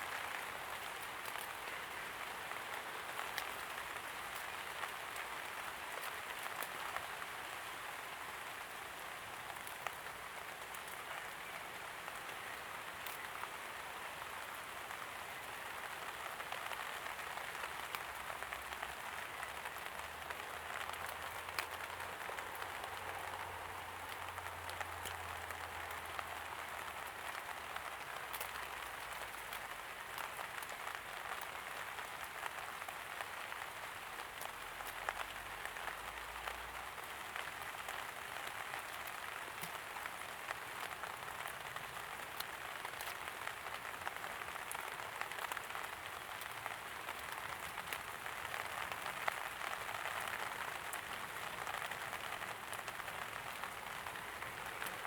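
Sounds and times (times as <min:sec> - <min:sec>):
raindrops ticking: 0:15.8 - 0:55.0.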